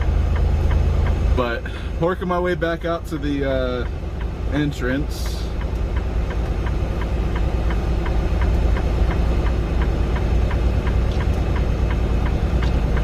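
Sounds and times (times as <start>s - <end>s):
diesel engine rumbling: 0.0s - 13.0s
light regular ticking: 0.0s - 13.0s.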